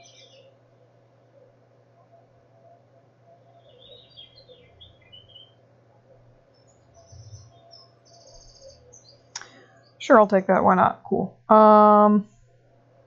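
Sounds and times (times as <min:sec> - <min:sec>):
birds chirping: 0:00.0 - 0:01.0, 0:02.1 - 0:10.9
steady low hum: 0:00.0 - 0:13.0.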